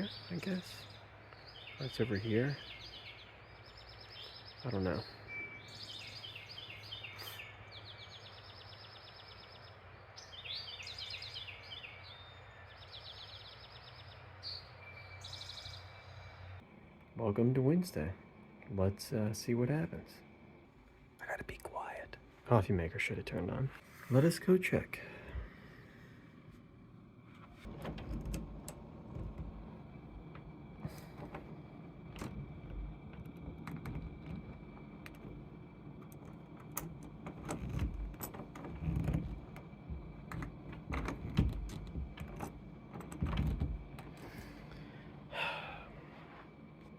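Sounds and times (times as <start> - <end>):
songbirds singing: 0.0 - 46.3
steady low hum: 15.8 - 46.9
quiet footsteps: 26.4 - 44.6
sharp clicks and knocks: 27.4 - 44.6.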